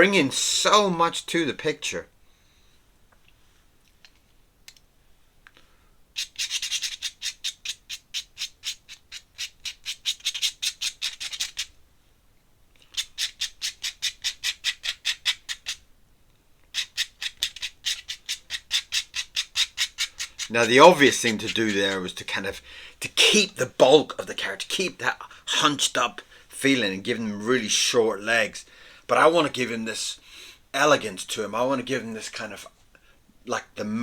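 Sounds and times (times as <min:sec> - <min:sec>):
pen nib scratching on paper: 0:16.7 - 0:22.0.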